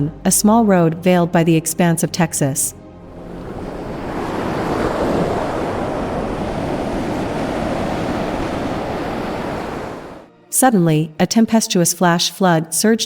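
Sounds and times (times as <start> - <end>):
floodwater rushing: 3.1 - 10.3.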